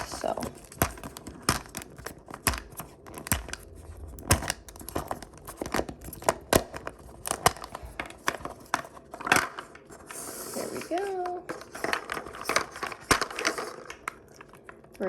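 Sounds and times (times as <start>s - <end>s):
plastic wrapper crinkling and tearing: 0.0s - 15.0s.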